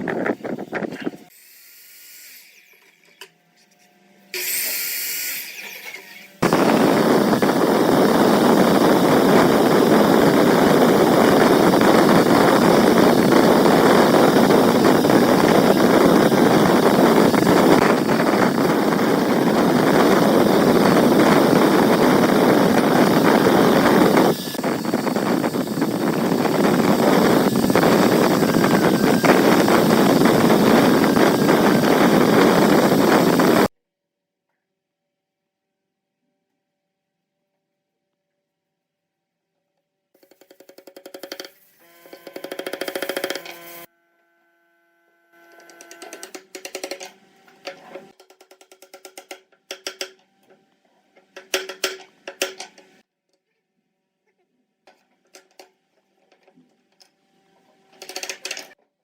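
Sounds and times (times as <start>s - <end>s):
woodworking power tool running: 4.4s - 33.7s, 40.2s - 48.1s.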